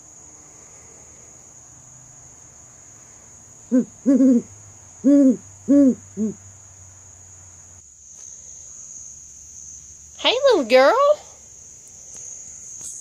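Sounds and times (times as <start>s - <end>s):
crickets trilling: 0.0s - 13.0s
owl hooting: 3.7s - 6.4s.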